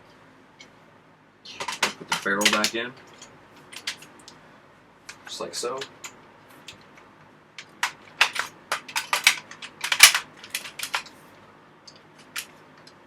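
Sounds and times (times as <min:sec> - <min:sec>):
shotgun parts clicking and clanking: 0:01.6 - 0:04.1, 0:07.6 - 0:11.2.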